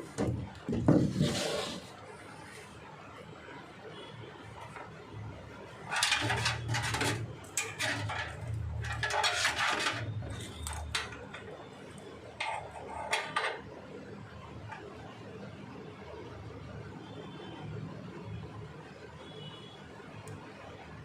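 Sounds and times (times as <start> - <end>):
hard objects clattering and scraping: 0.0 - 2.1, 5.7 - 13.7.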